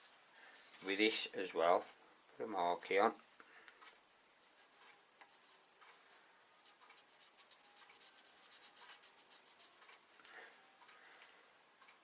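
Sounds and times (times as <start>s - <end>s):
marker pen scribbling on steel: 6.6s - 10.0s.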